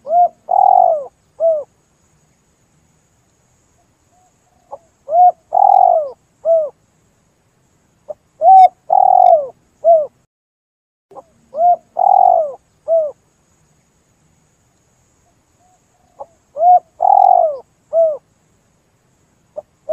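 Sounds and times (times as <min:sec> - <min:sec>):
dove cooing: 0:00.0 - 0:01.7, 0:04.2 - 0:06.8, 0:08.1 - 0:10.2, 0:11.1 - 0:13.2, 0:15.6 - 0:18.2.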